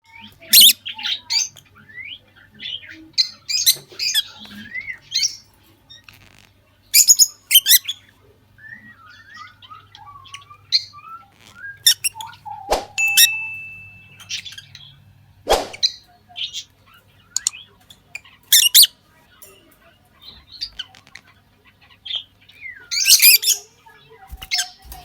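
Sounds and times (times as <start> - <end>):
lovebirds chirping and squawking: 0.0 - 25.0
gliding bird whistles: 11.6 - 13.4.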